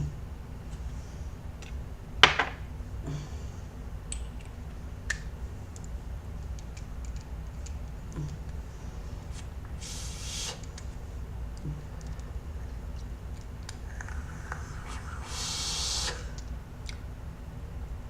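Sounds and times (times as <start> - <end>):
short hiss: 9.8 - 10.7, 14.0 - 16.4.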